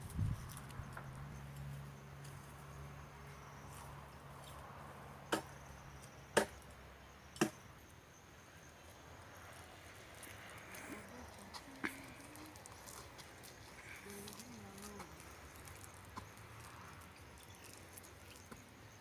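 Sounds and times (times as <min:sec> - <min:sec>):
firewood being struck: 0:06.4 - 0:06.6, 0:07.4 - 0:07.6.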